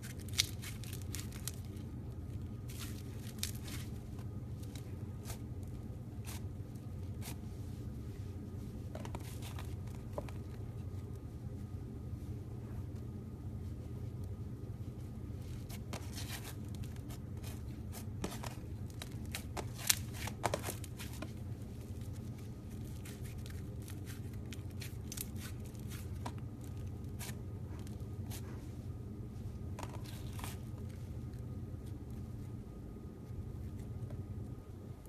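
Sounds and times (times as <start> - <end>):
slime crackling and popping: 0.0 - 1.8, 2.6 - 4.0, 18.3 - 27.4
low hum: 0.0 - 35.0.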